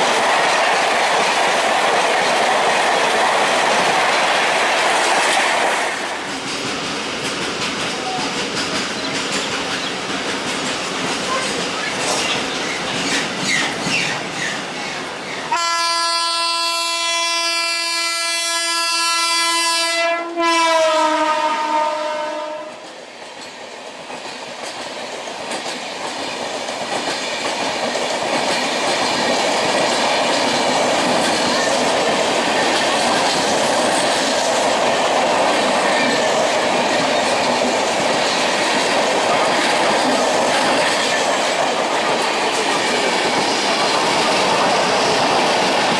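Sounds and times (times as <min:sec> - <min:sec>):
train coaches rumbling past: 0:00.0 - 0:45.9
train horn blast: 0:15.5 - 0:22.9.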